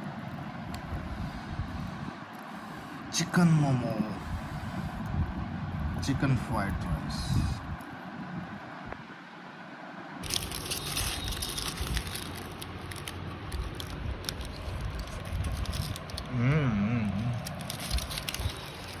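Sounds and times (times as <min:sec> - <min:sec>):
chewing and crackling food: 0:10.2 - 0:16.4, 0:17.0 - 0:19.0.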